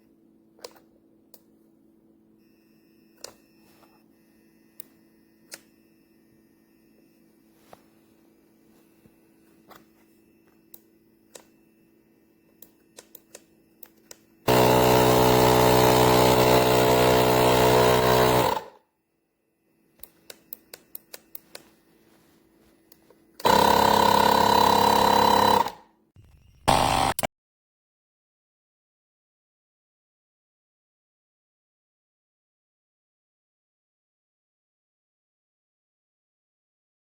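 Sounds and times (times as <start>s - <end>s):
air compressor buzzing hum: 14.4s - 18.8s, 23.4s - 27.3s.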